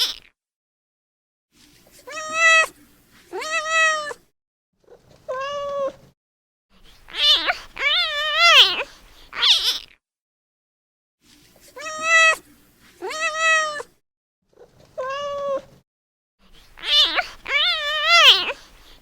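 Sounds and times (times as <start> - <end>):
kitten meowing: 2.1 - 2.7, 3.4 - 4.2, 7.1 - 9.8, 11.8 - 12.4, 13.0 - 13.9, 15.0 - 15.7, 16.8 - 19.0.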